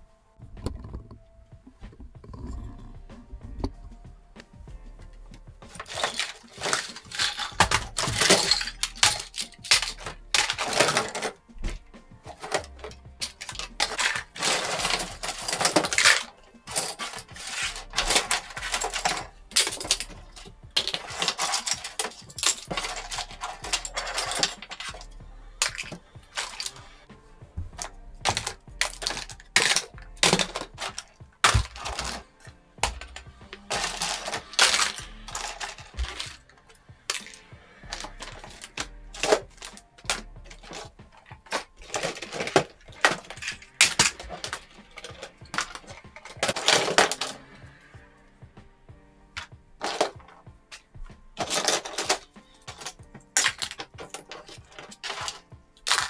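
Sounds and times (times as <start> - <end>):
small hard objects clattering: 2.2 - 48.2, 49.3 - 56.0.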